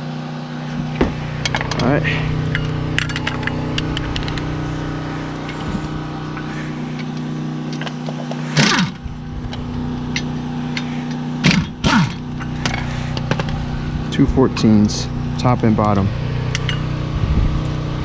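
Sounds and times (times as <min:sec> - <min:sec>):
mechanical hum: 0:00.0 - 0:18.0
hand tool noise: 0:00.6 - 0:13.7.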